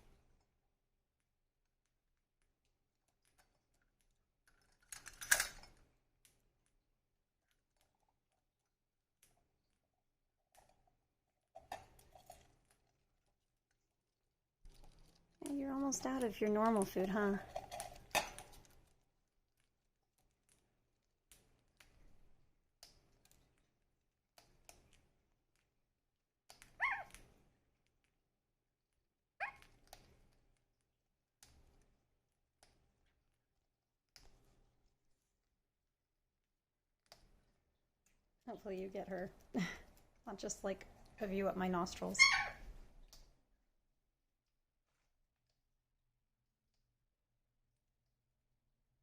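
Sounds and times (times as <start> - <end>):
clattering clicks of hard objects: 4.5 - 5.8.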